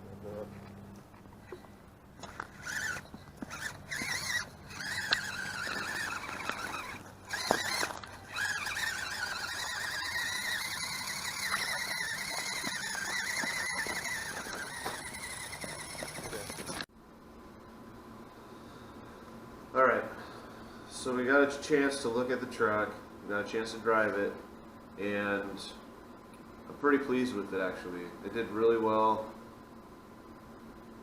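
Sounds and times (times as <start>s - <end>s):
toy car electric motor whining: 2.3s - 16.9s.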